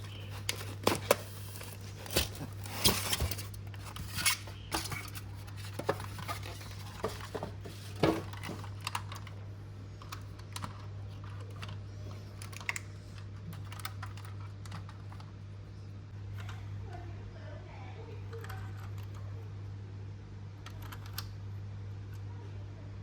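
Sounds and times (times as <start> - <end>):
steady low hum: 0.0 - 23.0.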